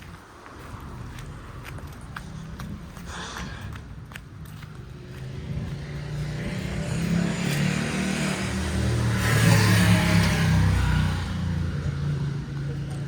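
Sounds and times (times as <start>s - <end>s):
car driving past: 4.9s - 12.6s.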